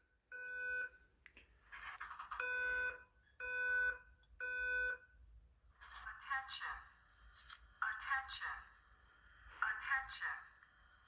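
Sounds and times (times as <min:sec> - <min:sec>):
fire alarm beeps: 0:00.0 - 0:01.0, 0:02.4 - 0:05.2.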